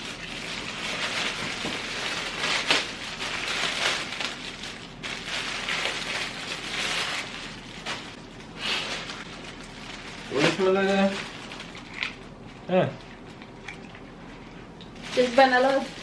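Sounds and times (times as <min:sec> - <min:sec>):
packaging ripping: 0:00.0 - 0:12.4
plastic packaging crinkling: 0:00.0 - 0:16.0.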